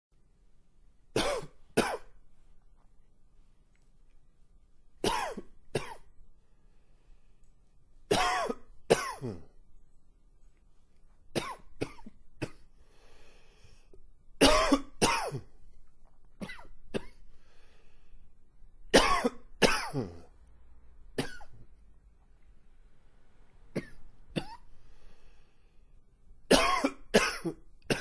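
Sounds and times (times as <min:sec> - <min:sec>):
man coughing: 0:01.2 - 0:02.1, 0:05.0 - 0:06.0, 0:08.1 - 0:09.5, 0:14.4 - 0:15.5, 0:19.0 - 0:20.3, 0:21.2 - 0:21.5, 0:23.8 - 0:24.6, 0:26.5 - 0:28.0.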